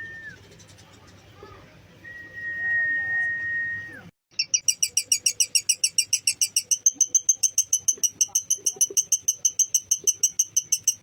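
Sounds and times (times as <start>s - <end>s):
lovebird chattering trill: 4.3s - 11.0s.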